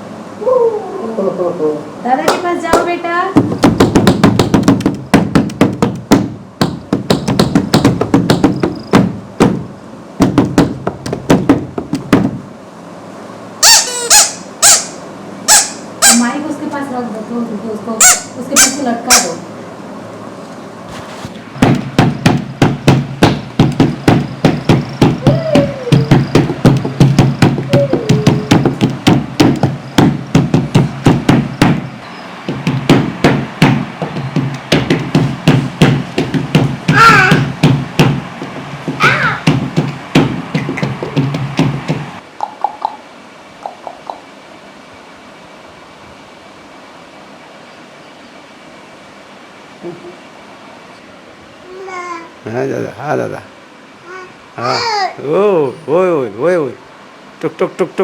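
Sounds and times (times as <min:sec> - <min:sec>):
sharp taps and knocks: 0:02.3 - 0:12.4, 0:20.9 - 0:31.9, 0:32.5 - 0:43.0.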